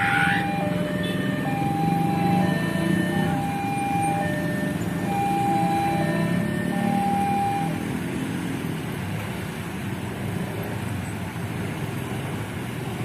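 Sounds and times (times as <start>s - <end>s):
road traffic noise: 0.0s - 13.0s.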